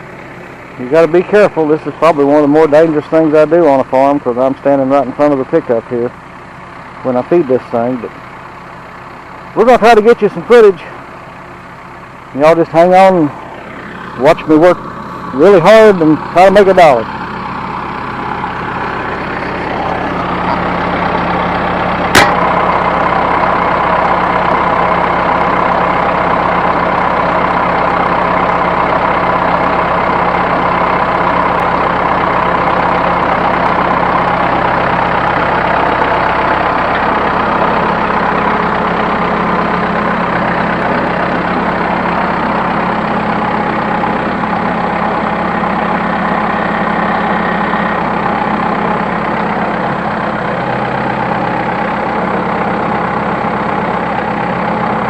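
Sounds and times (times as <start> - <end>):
square baler running: 0.0 - 55.0
tractor diesel engine running: 0.0 - 55.0
sharp knock: 22.1 - 22.4.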